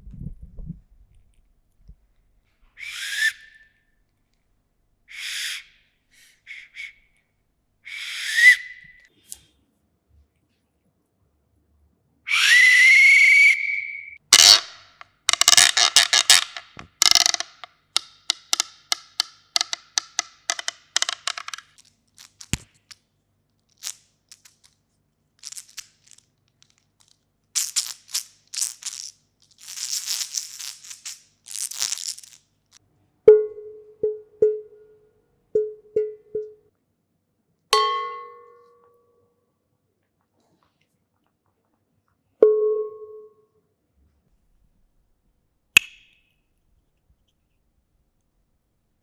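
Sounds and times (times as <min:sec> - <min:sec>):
ringing strike: 0:37.8 - 0:39.0.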